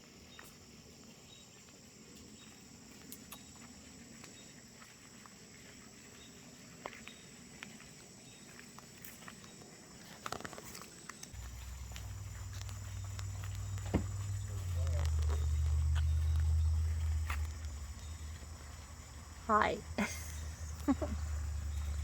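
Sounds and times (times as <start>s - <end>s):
faint insect chorus: 0.0s - 22.0s
low rumble: 11.4s - 22.0s.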